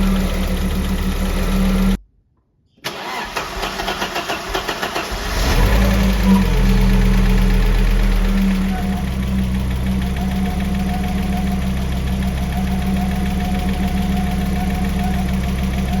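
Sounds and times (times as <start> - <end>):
engine idling: 0.0 - 2.0, 3.0 - 16.0
fast even valvetrain ticking: 6.1 - 16.0.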